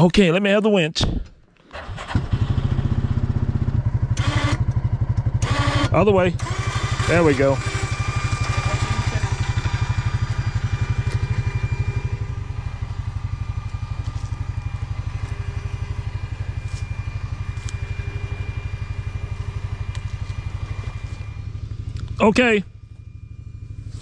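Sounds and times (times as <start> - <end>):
engine idling: 1.7 - 24.0.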